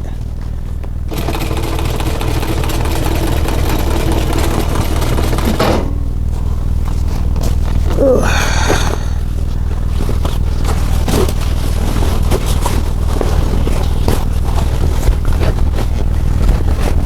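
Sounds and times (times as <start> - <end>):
sewing machine running: 1.1 - 6.0.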